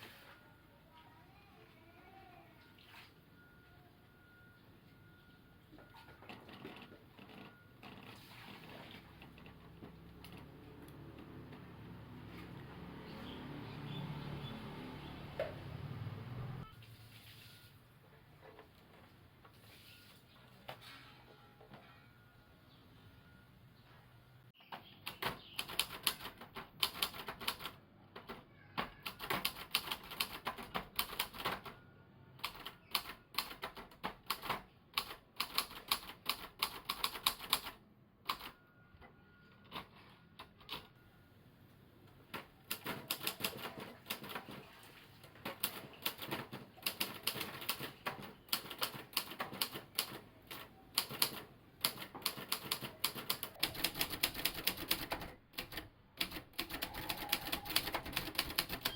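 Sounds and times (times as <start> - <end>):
typewriter typing: 25.0 - 31.8, 32.4 - 38.6, 42.3 - 44.7, 45.4 - 58.9.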